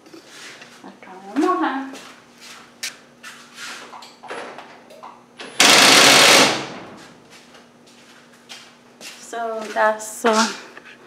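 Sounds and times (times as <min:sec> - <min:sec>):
garage door opener motor: 0:05.4 - 0:07.0.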